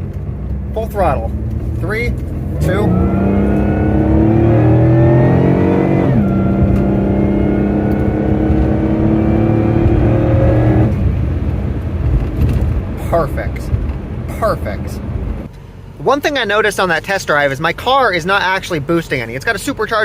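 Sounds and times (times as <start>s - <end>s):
car engine accelerating: 0.0s - 15.5s.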